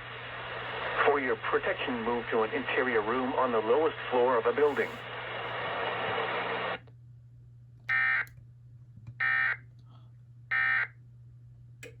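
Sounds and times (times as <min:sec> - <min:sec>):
radio static hiss: 0:00.0 - 0:06.8
faint low hum: 0:00.0 - 0:12.0.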